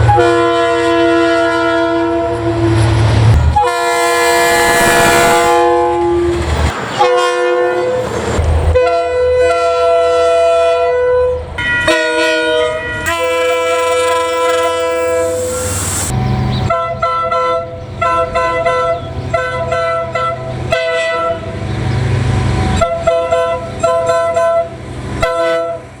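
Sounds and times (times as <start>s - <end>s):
locomotive air horn blasts: 0.0s - 2.7s, 3.5s - 6.3s, 8.8s - 16.1s
low rumble of train: 0.0s - 26.0s.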